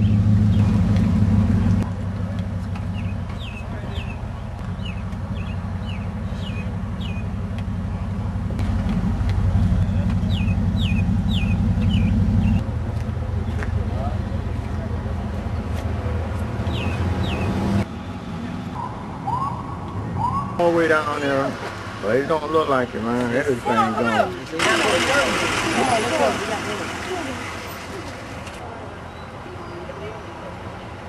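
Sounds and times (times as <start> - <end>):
vehicle engine humming: 0.0 - 28.9
bird chirping: 2.9 - 7.3, 9.8 - 12.6, 16.6 - 17.6.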